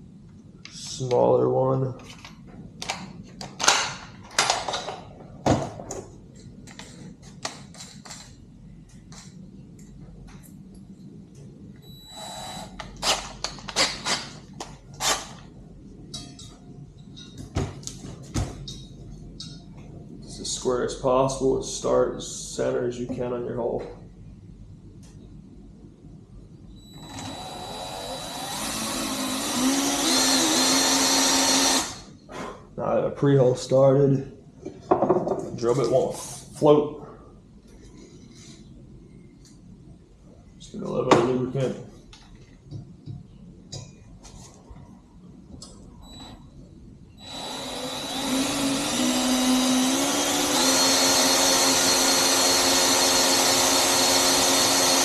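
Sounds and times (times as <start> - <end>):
drill bits clicking and rattling: 27.0 - 32.0, 47.2 - 55.0.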